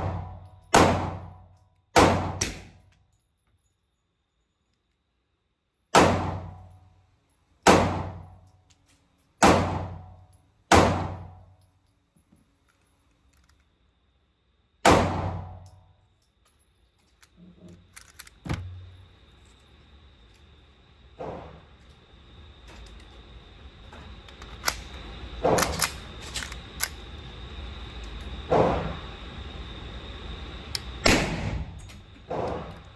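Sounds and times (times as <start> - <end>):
pistol shots echoing indoors: 0.0 - 3.0, 5.9 - 6.9, 7.6 - 8.6, 9.4 - 11.6, 14.8 - 15.9, 31.0 - 32.8
gun handling clicks and knock: 11.9 - 13.8, 15.6 - 19.0, 24.2 - 27.0.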